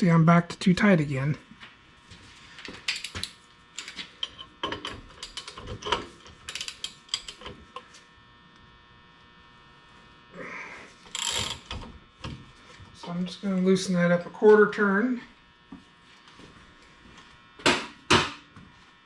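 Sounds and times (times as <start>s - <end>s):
hand ratchet clicking: 2.9s - 7.5s, 11.1s - 11.8s.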